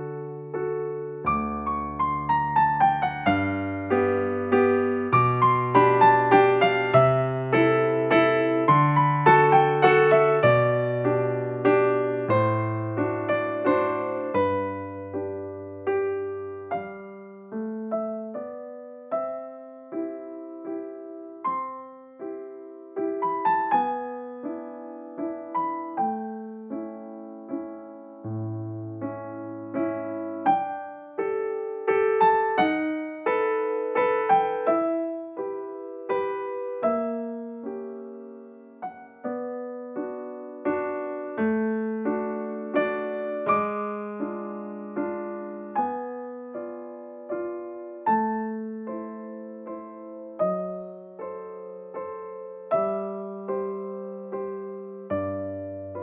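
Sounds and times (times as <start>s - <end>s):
gentle piano melody: 0.0s - 56.0s.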